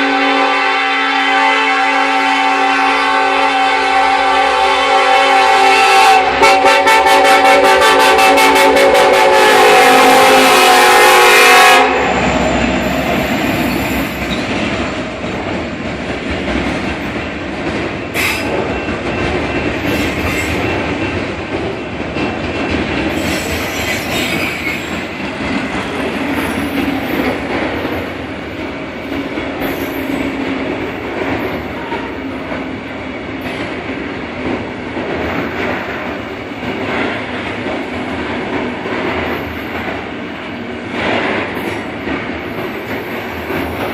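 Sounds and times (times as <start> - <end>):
locomotive horn chord: 0.0 - 12.2.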